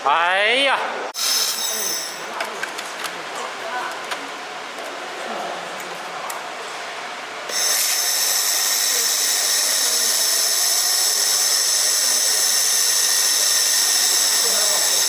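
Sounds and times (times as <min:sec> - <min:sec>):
laser welding hiss: 0:07.5 - 0:15.0.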